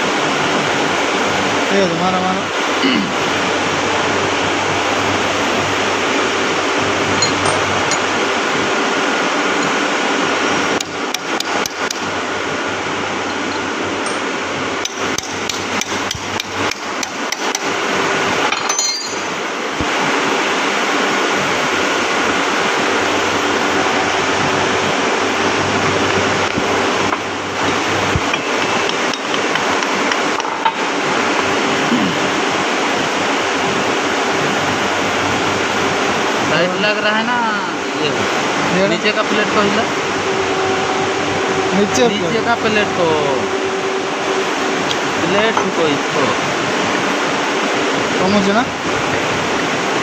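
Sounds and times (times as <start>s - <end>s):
steady rushing noise: 0.0s - 50.0s
hammer striking metal: 7.2s - 8.1s, 13.5s - 17.6s, 18.5s - 19.3s.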